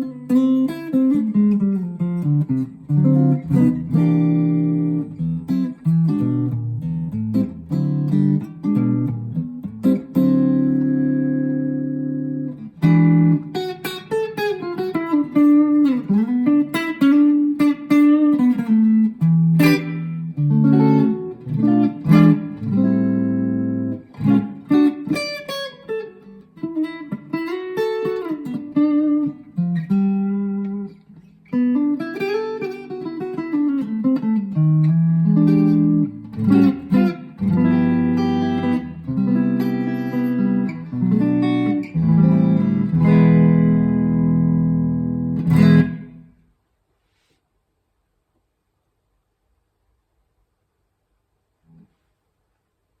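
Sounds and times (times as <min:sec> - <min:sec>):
electric guitar playing: 0:00.0 - 0:46.4.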